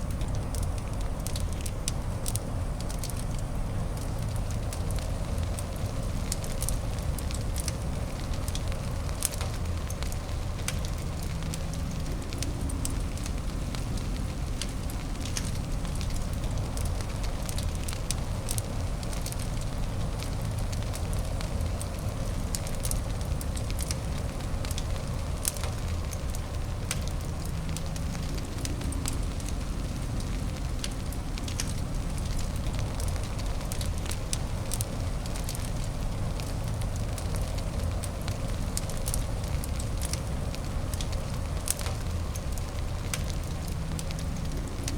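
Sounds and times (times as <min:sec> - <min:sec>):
fire crackling and popping: 0:00.0 - 0:44.9
low rumbling noise: 0:00.0 - 0:44.9.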